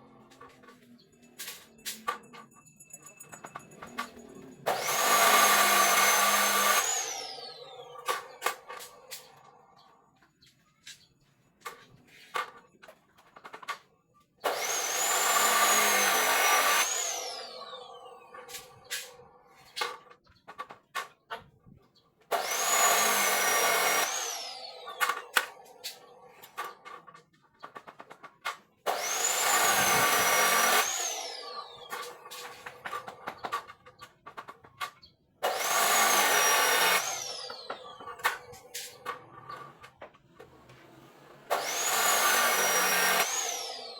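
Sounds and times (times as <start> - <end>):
power tool motor whine: 4.6 - 9.9, 14.4 - 19.4, 22.3 - 26.9, 28.9 - 33.5, 35.4 - 43.9.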